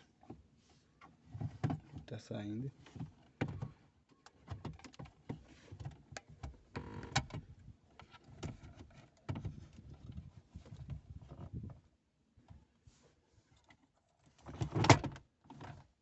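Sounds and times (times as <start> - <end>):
plastic creaking and scraping: 2.8 - 11.8.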